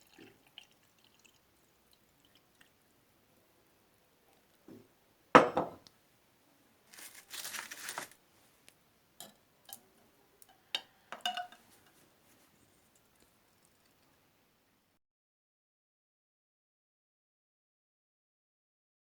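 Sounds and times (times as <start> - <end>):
glass clinking: 5.4 - 5.8, 10.8 - 11.6
rustling: 6.8 - 8.6.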